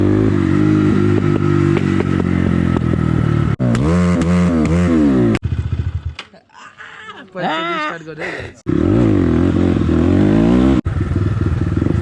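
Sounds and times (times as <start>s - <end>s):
motorcycle engine revving: 0.0s - 6.2s, 8.6s - 12.0s
motorcycle engine running: 0.0s - 6.2s, 8.7s - 12.0s.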